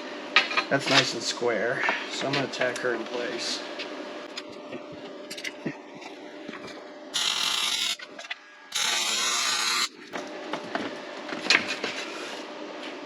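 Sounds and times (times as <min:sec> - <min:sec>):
welding arc sizzling: 0:07.2 - 0:08.0, 0:08.7 - 0:09.9.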